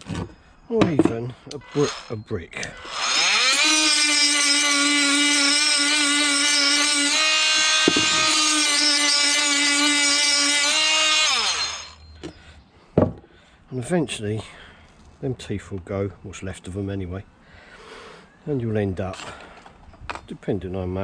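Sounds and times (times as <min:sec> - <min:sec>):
oscillating multi-tool buzzing: 0:01.6 - 0:02.2, 0:02.8 - 0:12.1.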